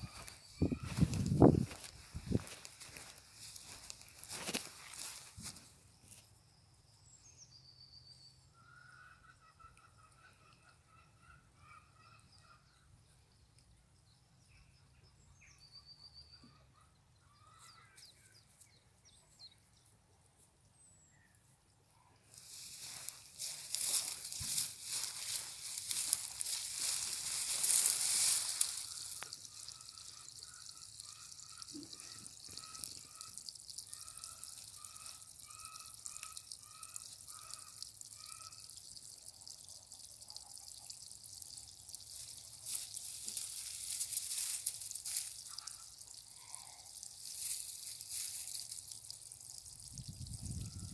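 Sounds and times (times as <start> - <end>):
water trickling and dripping: 0.0 - 6.2, 22.3 - 50.9.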